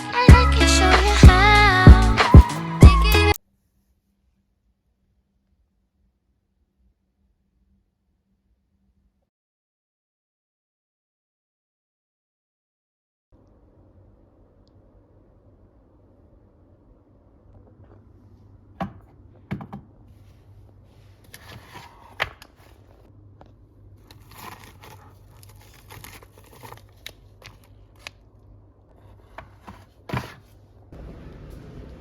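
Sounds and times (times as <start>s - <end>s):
rustling and crinkling: 20.1s - 28.3s, 28.9s - 30.6s.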